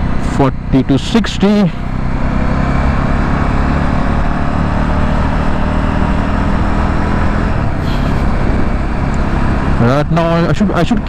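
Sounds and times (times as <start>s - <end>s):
motorcycle engine running: 0.0s - 11.0s
road noise: 0.0s - 11.0s.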